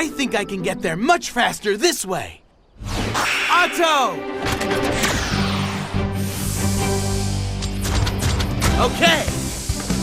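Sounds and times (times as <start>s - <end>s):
cartoon background music: 0.0s - 1.8s, 2.8s - 10.0s.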